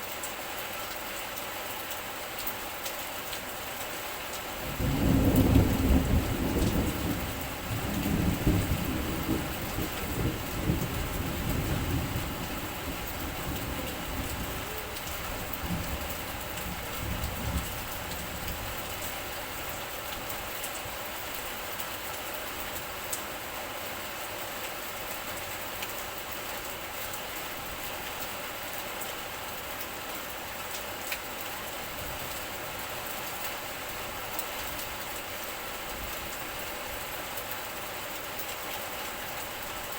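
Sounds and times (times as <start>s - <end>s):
heavy rain: 0.0s - 39.9s
thunder rumbling: 4.6s - 19.2s.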